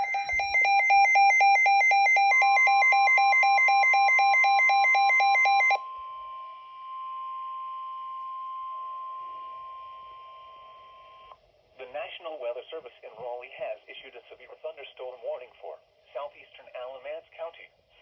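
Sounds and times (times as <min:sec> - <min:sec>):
steady warning tone: 0:00.0 - 0:11.3
two-pitch radio alarm: 0:00.0 - 0:11.3.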